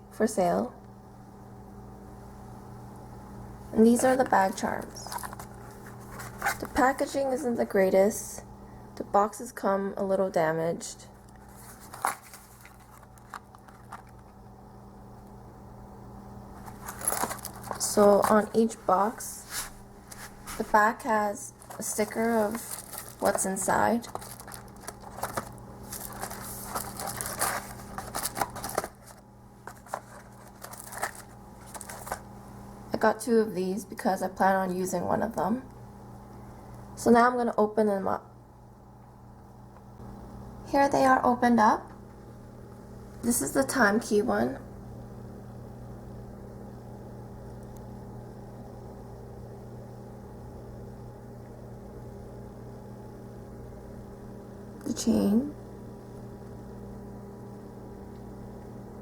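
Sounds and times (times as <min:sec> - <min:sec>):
faint steady hum: 0:00.0 - 0:59.0
boxes being handled: 0:03.9 - 0:07.2, 0:11.4 - 0:14.4, 0:16.6 - 0:32.3.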